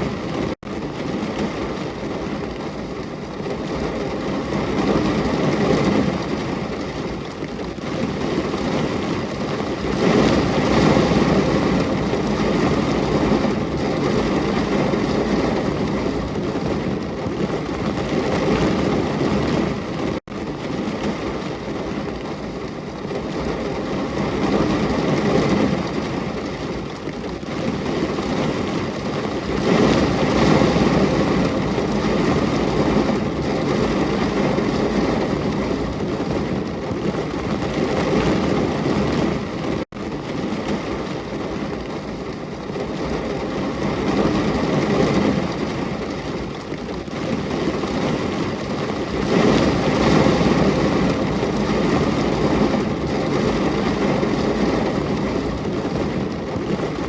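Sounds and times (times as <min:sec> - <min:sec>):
rain: 0:00.0 - 0:57.0.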